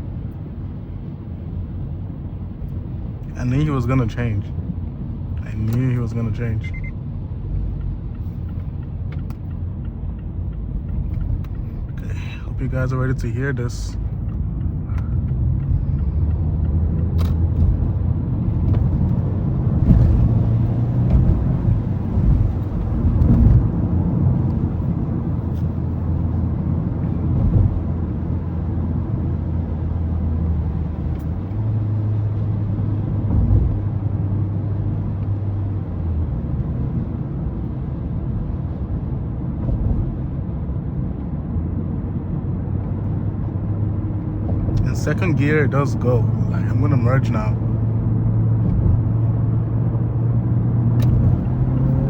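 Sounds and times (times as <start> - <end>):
car engine revving: 12.0 - 28.7, 44.2 - 52.0.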